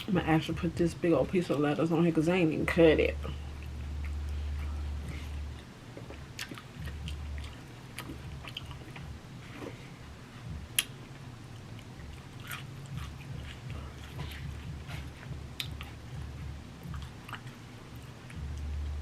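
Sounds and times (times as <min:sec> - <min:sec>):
low steady hum: 0:00.0 - 0:19.0
wet chewing mouth clicks: 0:03.6 - 0:09.1, 0:11.8 - 0:16.0, 0:16.8 - 0:18.7.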